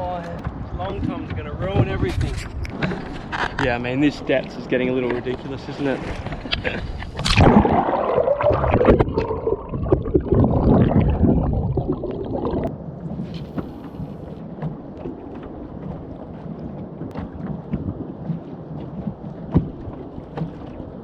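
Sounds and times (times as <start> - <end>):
water splashing and sloshing: 0.0 - 21.0.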